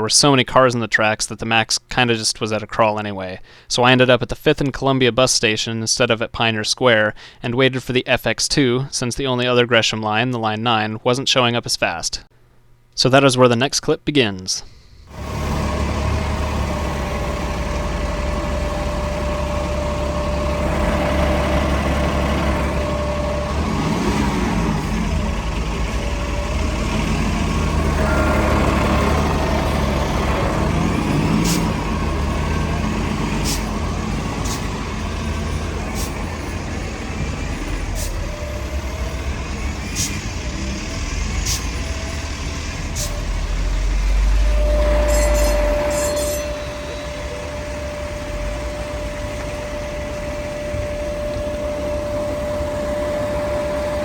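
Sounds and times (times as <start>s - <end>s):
diesel bus engine rumbling: 14.6s - 54.0s.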